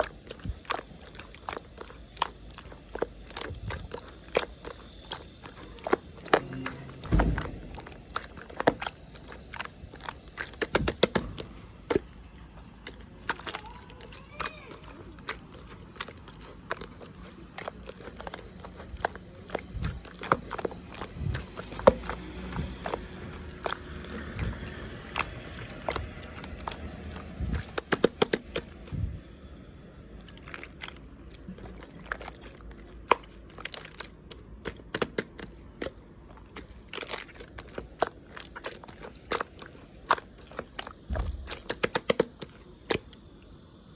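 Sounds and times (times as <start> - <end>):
slime squeezed clicking and popping: 0.0 - 28.9, 30.2 - 43.6
dull thuds: 6.2 - 8.9.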